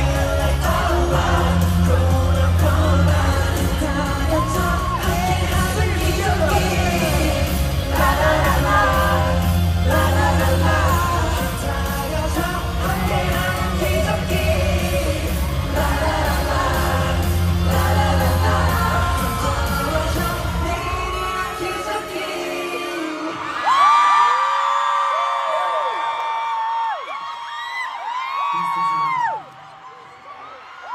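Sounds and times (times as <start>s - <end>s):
amplified backing track with bass: 0.0s - 21.2s
group singing pop song: 0.0s - 23.9s.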